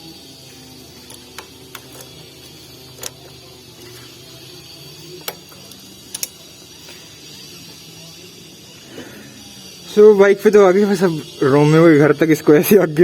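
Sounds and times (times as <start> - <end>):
steady low hum: 0.0 - 11.7
sharp clicks and knocks: 1.1 - 2.2, 2.9 - 3.4, 5.2 - 6.4.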